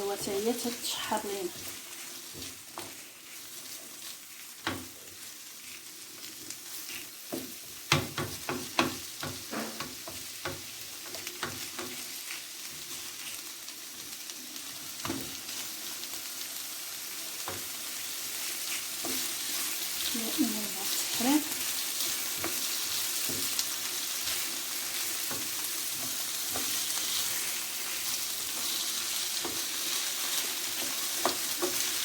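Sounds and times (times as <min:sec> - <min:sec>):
vegetables sizzling in oil: 0:00.0 - 0:32.0
utensil knocking against pan: 0:07.9 - 0:10.6.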